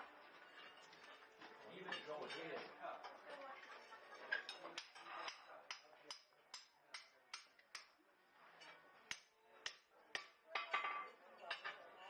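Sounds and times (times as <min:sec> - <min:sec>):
hammer striking metal on anvil: 0:04.5 - 0:08.0, 0:09.1 - 0:11.8.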